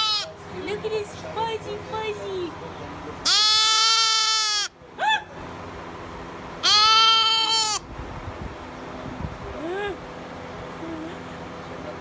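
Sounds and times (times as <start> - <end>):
sheep bleating: 0.0 - 0.3, 3.2 - 4.7, 6.6 - 7.8.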